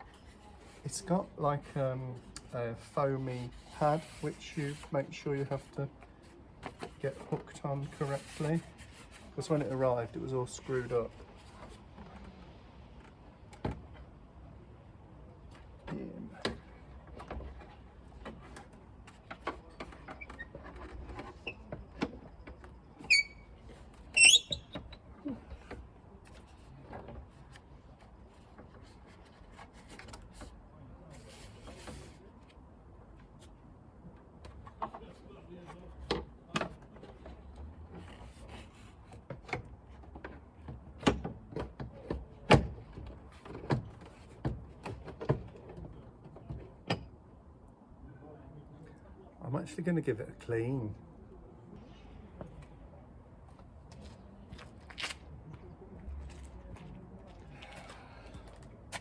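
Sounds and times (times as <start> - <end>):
short high squeaks: 23.0 - 25.0.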